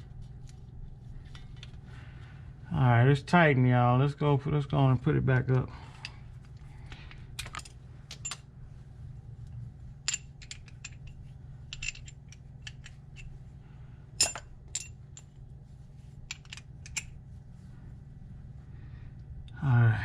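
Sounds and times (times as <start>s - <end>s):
steady low hum: 0.0s - 20.0s
metallic clinks of hand tools: 14.2s - 15.3s.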